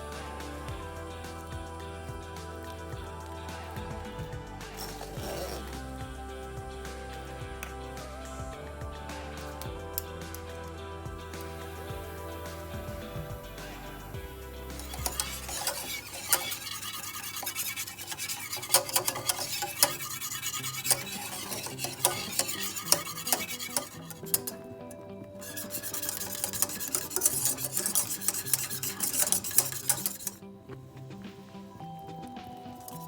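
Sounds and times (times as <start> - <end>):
soft background music: 0.0 - 33.0
spoon scraping in cooking pot: 4.8 - 5.8, 14.8 - 24.7, 25.4 - 30.4.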